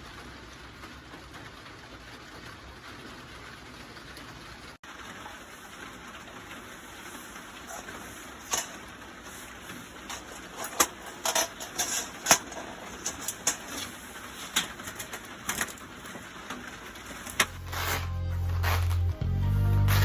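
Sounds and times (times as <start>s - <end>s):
wood fire crackling and popping: 0.0s - 19.2s
music: 17.5s - 20.0s.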